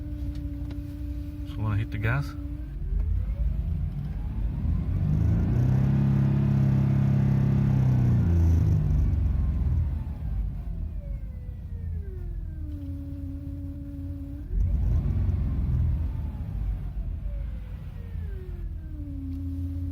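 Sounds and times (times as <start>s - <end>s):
low engine drone: 0.0s - 19.9s
whining tone: 0.0s - 19.9s.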